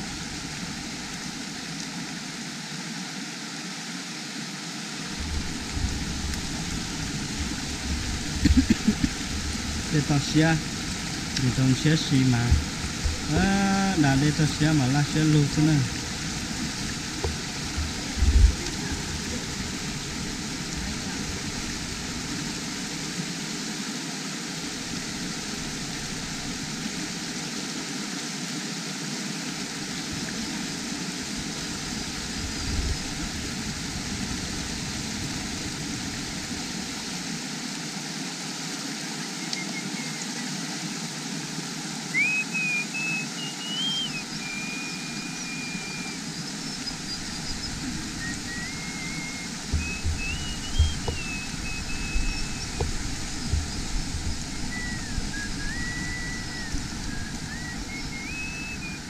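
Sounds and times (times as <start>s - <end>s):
steady outdoor hiss: 0.0s - 59.0s
whistled call: 39.3s - 40.4s, 42.1s - 52.8s, 54.3s - 59.0s.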